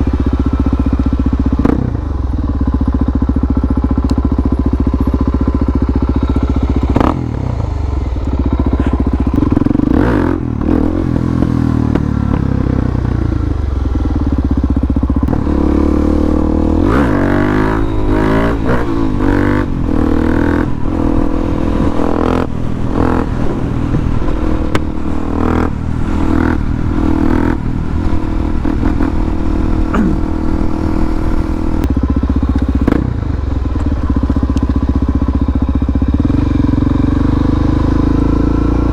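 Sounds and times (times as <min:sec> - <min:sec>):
motorcycle engine running: 0:00.0 - 0:38.9
wind noise on microphone: 0:17.8 - 0:32.0.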